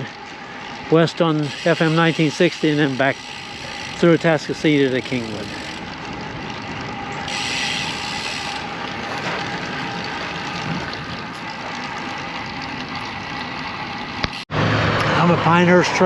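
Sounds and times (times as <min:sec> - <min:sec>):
bicycle freehub ticking: 0:00.0 - 0:10.7, 0:11.4 - 0:14.4
loud rush of noise: 0:14.5 - 0:16.0.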